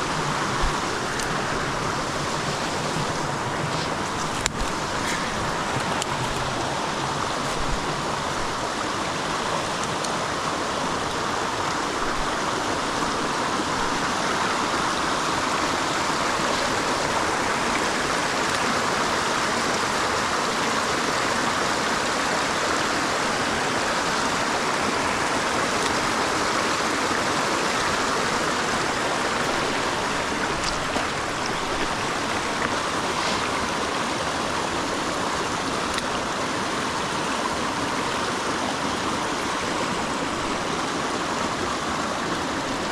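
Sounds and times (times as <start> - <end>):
creek water running over rocks: 0.0 - 42.9.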